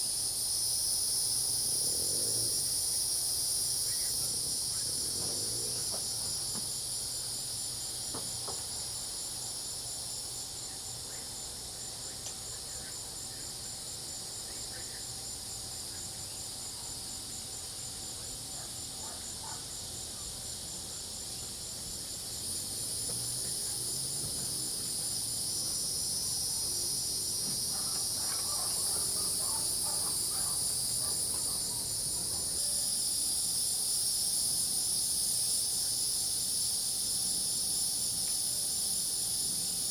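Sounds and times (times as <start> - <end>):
crickets and cicadas trilling: 0.0 - 39.9
pulsing insect chirp: 0.0 - 39.9
frog calls: 25.5 - 32.8.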